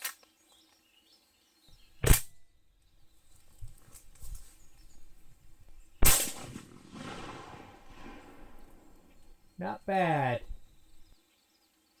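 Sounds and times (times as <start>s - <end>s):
shotgun shot echoing: 2.0s - 2.4s, 4.6s - 11.1s
faint low thumps: 3.0s - 11.1s.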